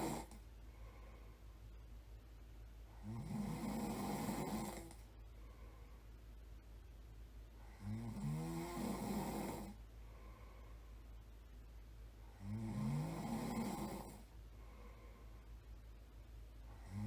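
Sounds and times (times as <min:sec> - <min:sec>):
person snoring: 0:00.0 - 0:00.4, 0:03.0 - 0:05.0, 0:07.7 - 0:09.8, 0:12.3 - 0:14.3, 0:16.8 - 0:17.0
steady low hum: 0:00.0 - 0:17.0.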